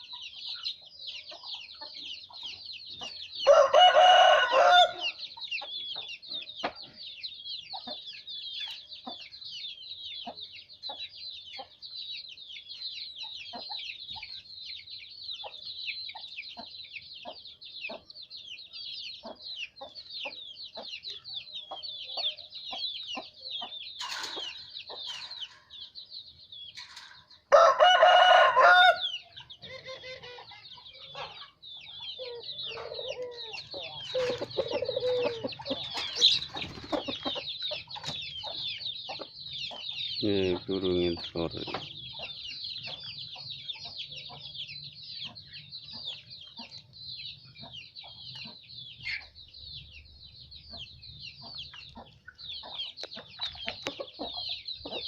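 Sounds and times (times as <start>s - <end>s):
chickens clucking: 0.0s - 55.0s
chicks peeping: 0.0s - 55.0s
rooster crowing: 3.5s - 5.2s, 27.5s - 29.1s.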